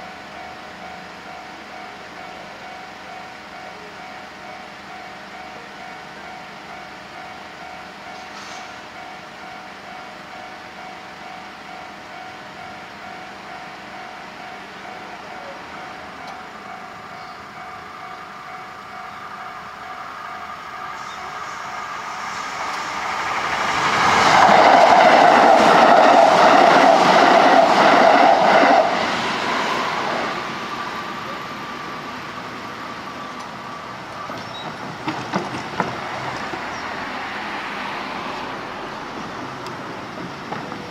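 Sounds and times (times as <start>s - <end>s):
train wheels clacking over rail joints: 34.2s - 36.8s, 39.1s - 40.9s.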